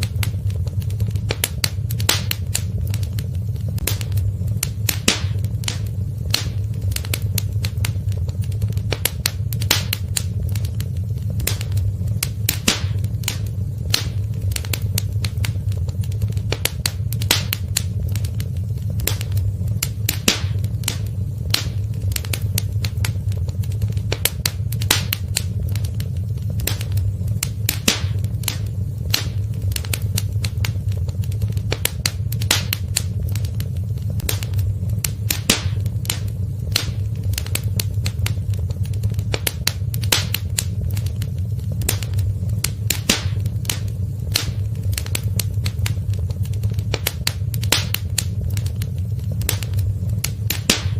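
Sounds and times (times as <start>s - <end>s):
wood fire crackling and popping: 0.0s - 50.9s.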